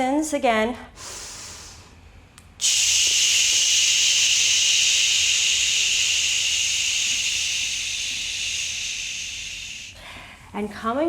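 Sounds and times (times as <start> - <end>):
hissing breath out: 2.6 - 10.3.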